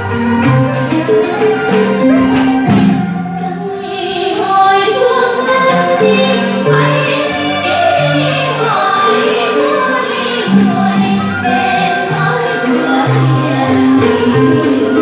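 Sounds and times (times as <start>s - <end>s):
light percussion beat: 0.0s - 3.8s
instrumental accompaniment: 0.0s - 15.0s
people singing: 1.0s - 15.0s.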